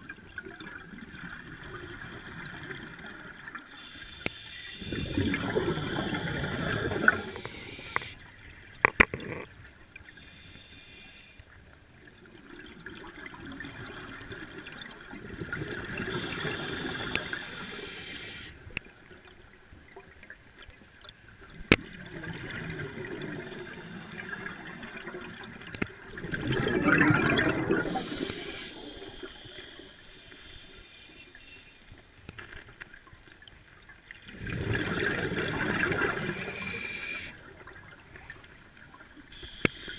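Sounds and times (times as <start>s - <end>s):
exhaled air bubbling underwater: 0.0s - 39.9s
regulator hissing inhalations: 3.7s - 8.2s, 10.1s - 11.4s, 16.1s - 18.6s, 27.8s - 32.2s, 36.1s - 37.4s, 39.3s - 39.9s.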